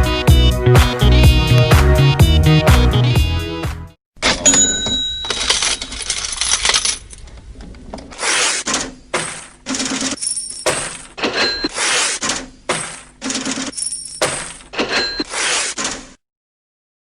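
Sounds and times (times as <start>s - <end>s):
coins clinking and jingling: 4.4s - 7.2s, 9.8s - 11.7s, 13.5s - 15.2s.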